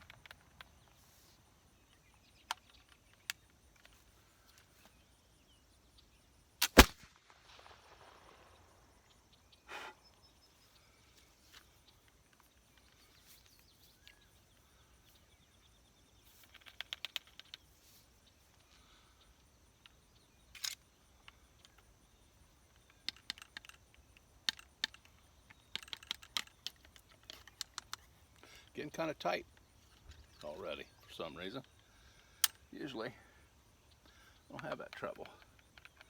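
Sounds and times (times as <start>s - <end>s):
pistol reloading clicks and taps: 0.0s - 1.0s, 1.9s - 4.0s, 19.8s - 21.9s, 22.7s - 28.5s, 31.6s - 32.7s, 33.9s - 36.0s.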